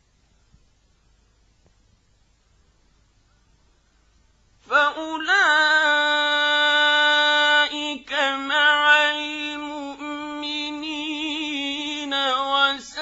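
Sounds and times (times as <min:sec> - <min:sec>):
man reciting melodically: 0:04.6 - 0:13.0.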